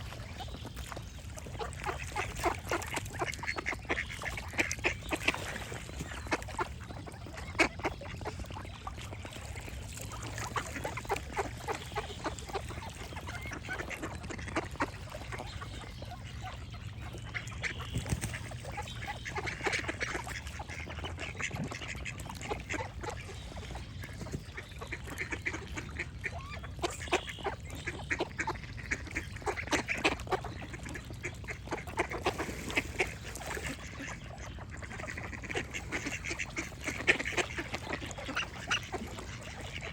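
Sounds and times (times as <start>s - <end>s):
ducks quacking: 1.4s - 39.9s
birds singing: 11.0s - 31.8s.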